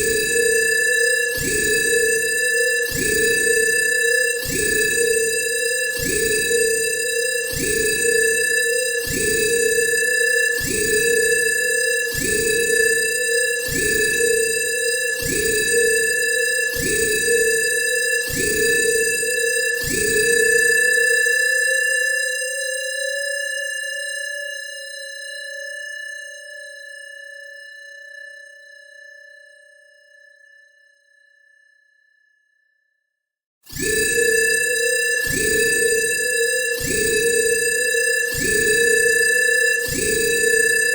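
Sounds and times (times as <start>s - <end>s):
high electronic alarm tone: 33.8s - 40.9s.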